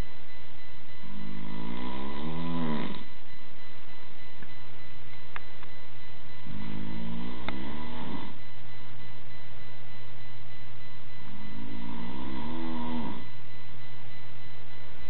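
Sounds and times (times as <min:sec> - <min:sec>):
steady low hum: 0:00.0 - 0:15.0
man snoring: 0:01.2 - 0:03.1, 0:06.5 - 0:08.4, 0:11.6 - 0:13.3.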